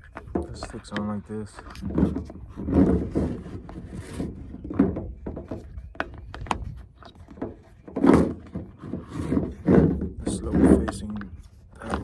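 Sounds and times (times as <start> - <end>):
plastic parts knocking: 0.0 - 12.0.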